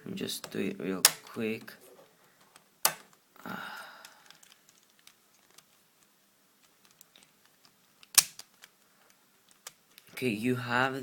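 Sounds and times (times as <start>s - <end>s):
plastic puzzle cube clicking: 4.0s - 10.2s.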